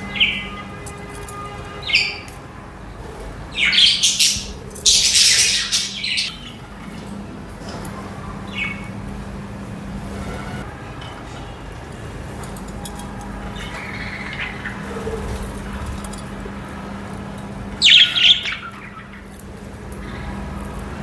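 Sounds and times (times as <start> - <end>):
budgerigars chirping and squawking: 3.5 - 6.6, 17.8 - 19.1.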